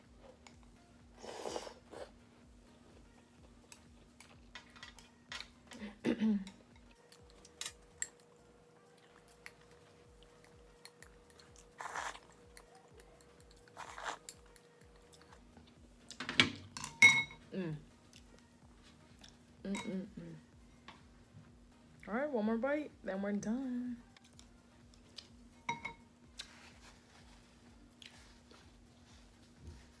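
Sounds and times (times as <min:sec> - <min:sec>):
person chewing food: 0:08.9 - 0:16.2.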